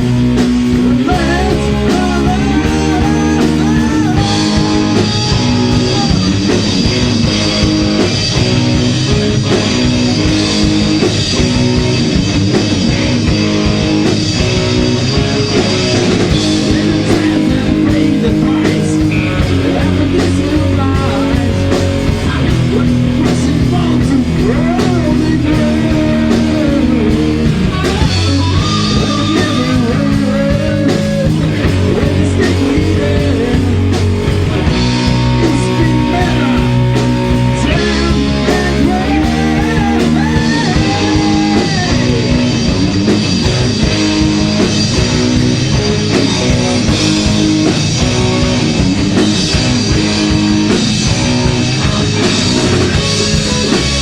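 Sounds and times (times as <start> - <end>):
bending lead guitar line: 0.0 - 54.0
heavy metal band playing: 0.0 - 54.0.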